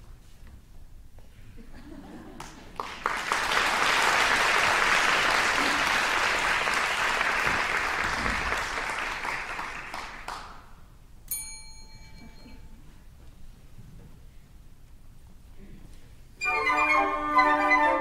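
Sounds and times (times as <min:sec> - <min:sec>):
audience applauding: 0:02.3 - 0:10.7
small bell ding: 0:11.3 - 0:12.7.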